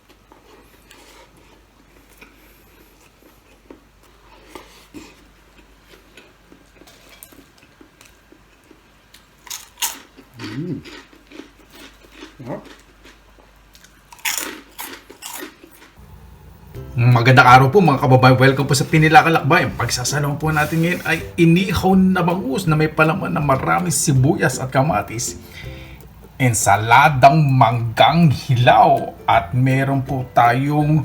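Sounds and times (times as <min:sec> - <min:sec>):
crunchy food being chewed: 0:00.0 - 0:16.1.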